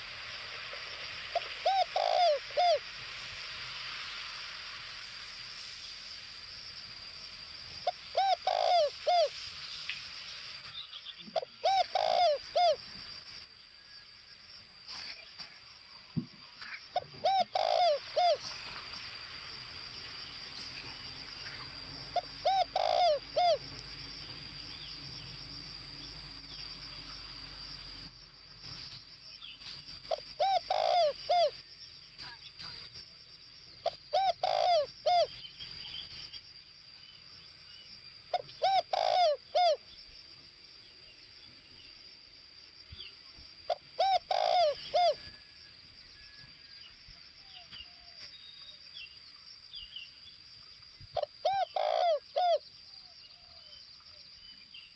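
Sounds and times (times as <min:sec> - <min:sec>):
dove cooing: 0:01.3 - 0:02.8, 0:07.8 - 0:09.4, 0:11.3 - 0:12.8, 0:17.0 - 0:18.5, 0:22.1 - 0:23.7, 0:30.1 - 0:31.6, 0:33.8 - 0:35.4, 0:38.3 - 0:39.8, 0:43.7 - 0:45.6, 0:51.1 - 0:52.6.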